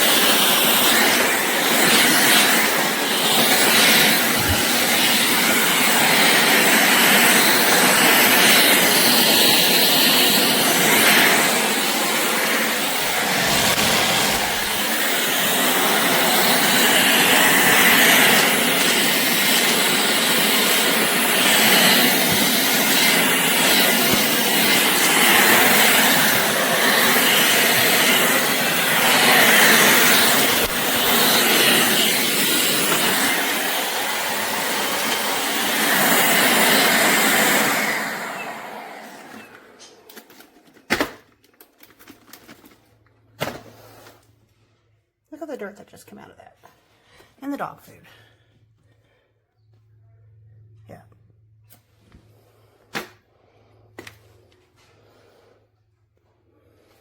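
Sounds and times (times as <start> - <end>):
stick vacuum running: 0.0 - 44.2.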